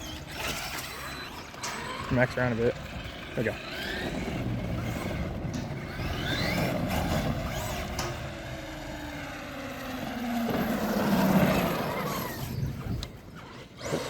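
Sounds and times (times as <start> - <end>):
electric motor whining: 0.0 - 14.0
tyre and ground noise: 0.0 - 14.0.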